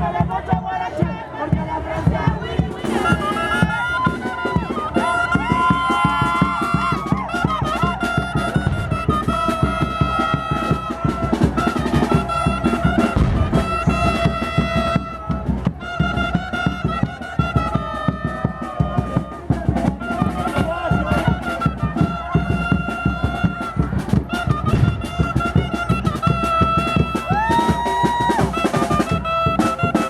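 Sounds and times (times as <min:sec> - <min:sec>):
driving drumming: 0:01.4 - 0:30.0
brass horns playing melody: 0:01.9 - 0:05.4, 0:06.8 - 0:18.7, 0:19.9 - 0:27.3, 0:28.6 - 0:30.0.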